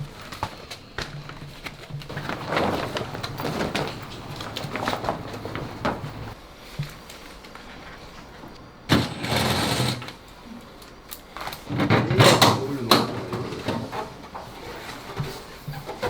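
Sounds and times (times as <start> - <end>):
plastic panels scraping and rustling: 1.8 - 6.4, 8.9 - 10.2, 11.5 - 16.0.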